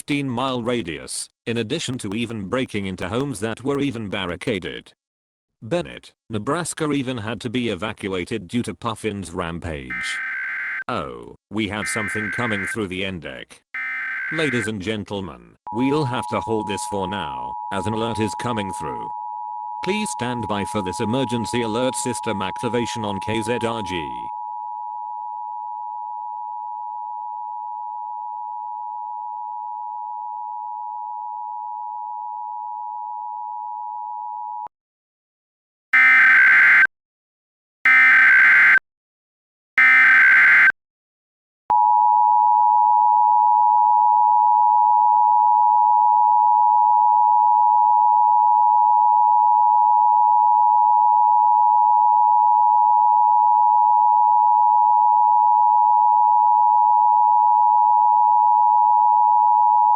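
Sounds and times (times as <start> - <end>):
screeching data bursts: 9.9 - 10.8, 11.8 - 12.8, 13.8 - 14.7, 36.0 - 36.9, 37.9 - 38.8, 39.8 - 40.7
steady alert tone: 9.9 - 10.8, 11.8 - 12.7, 13.8 - 14.7, 36.0 - 36.9, 37.9 - 38.8, 39.8 - 40.7
two-tone attention signal: 9.9 - 10.8, 11.8 - 12.8, 13.8 - 14.7, 36.0 - 36.9, 37.9 - 38.8, 39.8 - 40.7.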